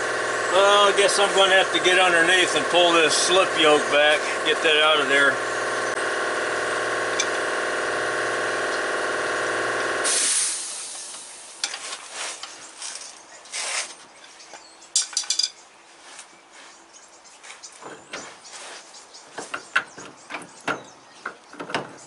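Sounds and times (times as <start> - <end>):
air compressor running: 0.0 - 11.7
air hiss: 10.0 - 11.5.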